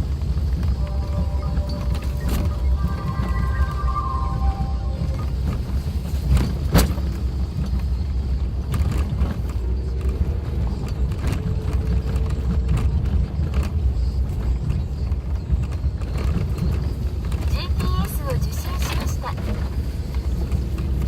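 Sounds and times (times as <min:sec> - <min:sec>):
car engine and road rumble: 0:00.0 - 0:21.0
car knocking and rattling on bumps: 0:06.2 - 0:21.0.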